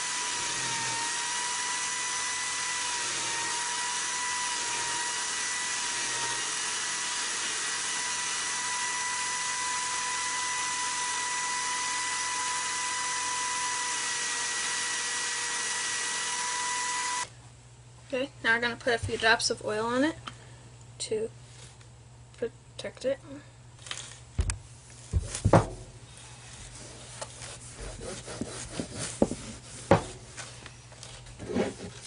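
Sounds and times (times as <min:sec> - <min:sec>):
power tool motor whine: 0:00.0 - 0:17.3.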